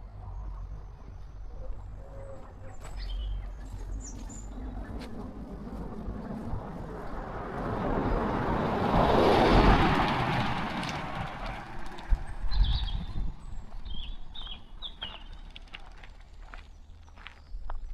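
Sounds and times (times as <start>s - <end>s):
car passing: 0.0s - 16.4s
bird chirps: 0.2s - 6.4s, 12.5s - 15.6s.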